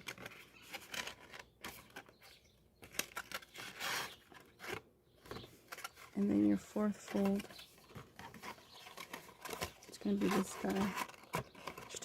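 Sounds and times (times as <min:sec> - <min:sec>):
card rustling and rubbing: 0:00.0 - 0:12.0
scraping rub: 0:03.5 - 0:04.8.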